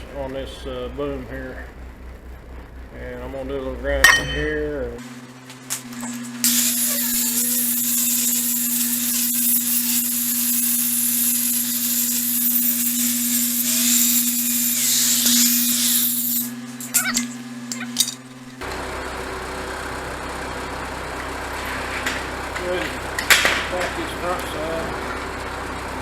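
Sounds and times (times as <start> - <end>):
steady low hum: 0.0 - 5.1
metal clinks: 4.0 - 4.7
angle grinder grinding steel: 4.0 - 5.0, 6.4 - 18.9.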